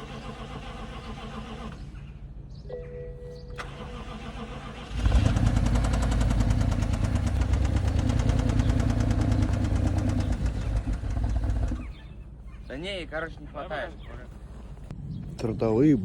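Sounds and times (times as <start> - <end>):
car engine cranking: 0.0 - 1.8, 3.6 - 12.1.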